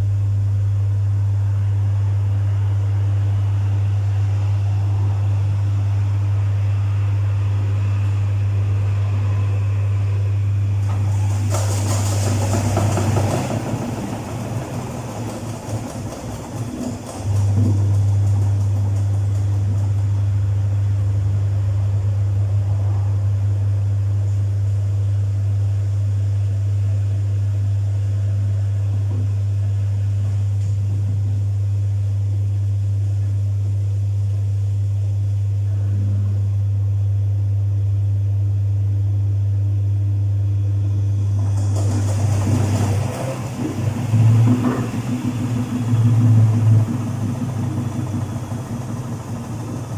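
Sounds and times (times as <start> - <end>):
washing machine humming: 0.0 - 49.9.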